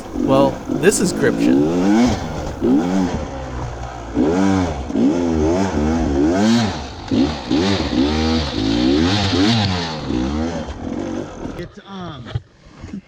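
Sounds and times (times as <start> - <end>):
dirt bike engine revving: 0.0 - 3.1.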